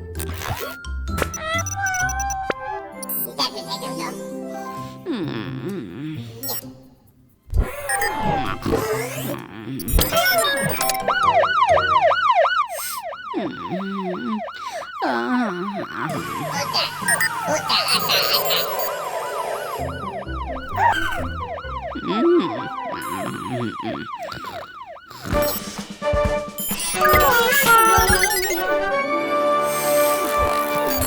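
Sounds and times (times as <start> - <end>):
cartoon fire truck siren wailing: 1.3 - 3.8, 9.8 - 31.0.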